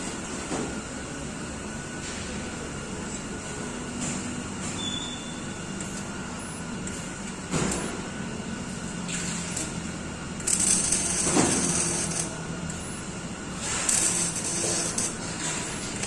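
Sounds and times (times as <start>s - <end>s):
steady background noise: 0.0s - 16.0s.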